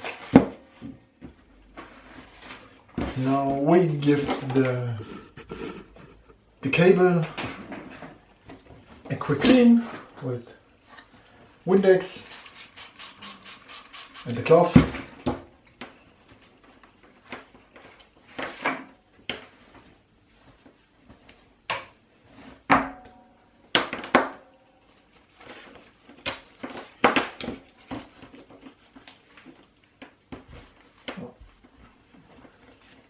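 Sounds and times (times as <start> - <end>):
cloth rubbing on cable: 4.8 - 6.4, 12.2 - 14.6.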